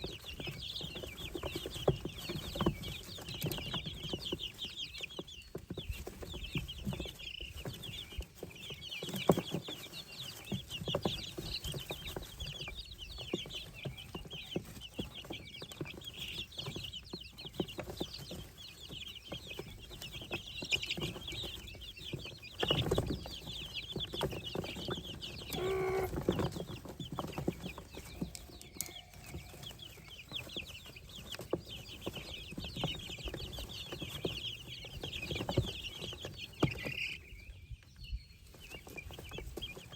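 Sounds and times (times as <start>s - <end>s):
baby poultry peeping: 0.0s - 39.9s
lower bird call: 25.4s - 26.5s.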